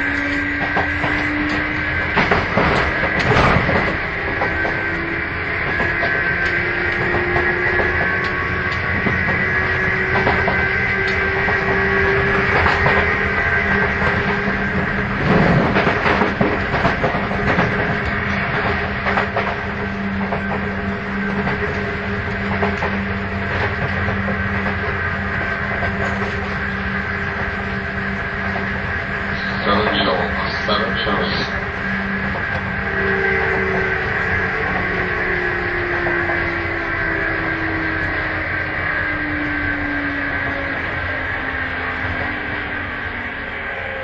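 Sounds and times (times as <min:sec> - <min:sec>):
rail-joint clicks: 0:00.0 - 0:26.6, 0:32.2 - 0:34.9
train motor whine: 0:00.0 - 0:44.0.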